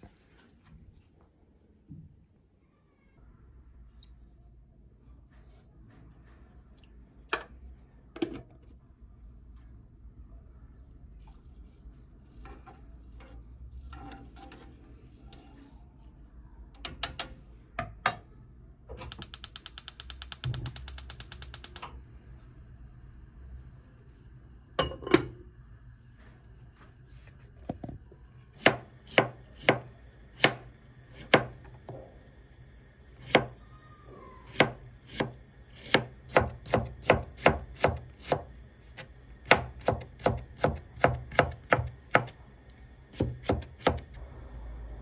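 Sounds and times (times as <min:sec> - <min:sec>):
knife chopping on cutting board: 0:28.6 - 0:31.6, 0:34.5 - 0:38.5, 0:39.4 - 0:42.4, 0:43.2 - 0:44.0.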